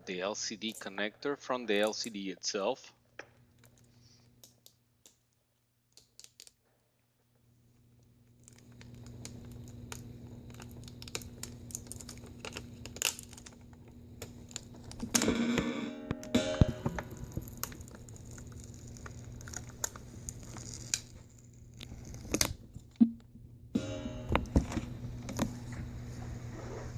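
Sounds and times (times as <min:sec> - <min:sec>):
low steady hum: 0:00.0 - 0:04.5, 0:07.3 - 0:26.9
tape being peeled: 0:05.9 - 0:06.6, 0:08.4 - 0:15.2, 0:17.0 - 0:23.0.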